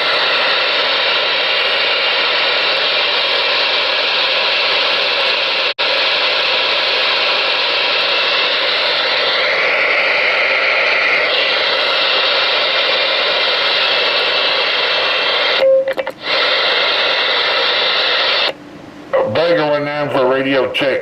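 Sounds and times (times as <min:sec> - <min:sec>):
radio static hissing: 0:00.0 - 0:21.0
short beep: 0:15.6 - 0:16.0.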